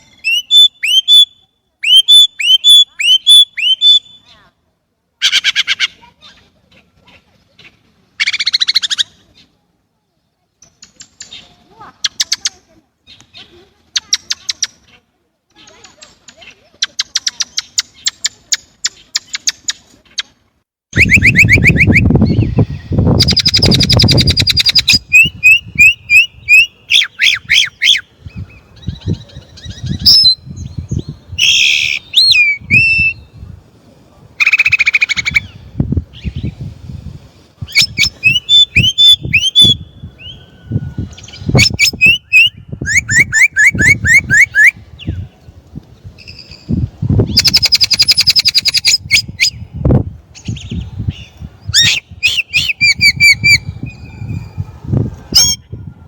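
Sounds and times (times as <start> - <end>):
blackbird singing: 0.0 - 4.4, 20.9 - 33.4, 37.7 - 45.4, 46.2 - 49.7, 50.4 - 54.5.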